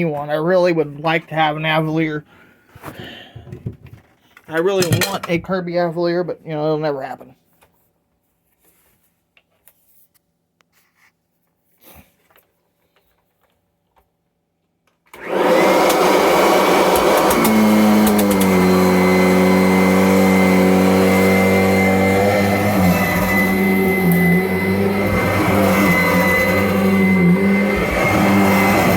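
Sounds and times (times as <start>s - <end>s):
vacuum cleaner motor running: 15.2s - 28.9s.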